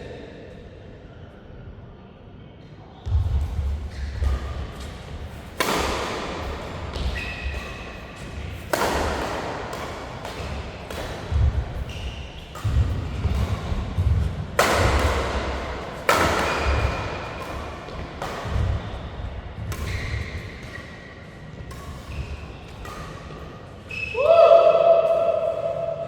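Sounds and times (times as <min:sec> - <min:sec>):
thuds of footwork and hits: 0:03.1 - 0:20.4
shoe squeaks: 0:06.9 - 0:08.6, 0:11.7 - 0:13.8, 0:19.7 - 0:24.3.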